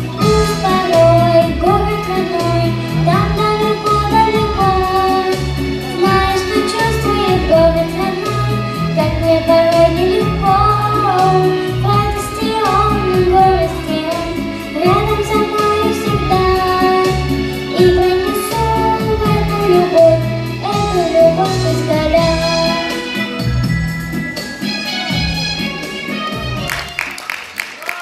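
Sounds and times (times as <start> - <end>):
song with sung melody: 0.0 - 28.0.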